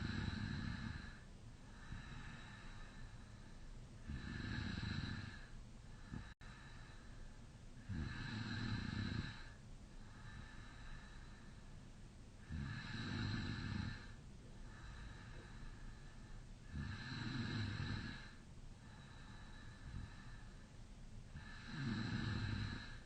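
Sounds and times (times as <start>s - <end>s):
man snoring: 0.0s - 1.2s, 4.1s - 5.5s, 7.8s - 9.6s, 12.4s - 14.2s, 16.7s - 18.4s, 21.4s - 23.0s
quiet breathing: 0.0s - 23.0s.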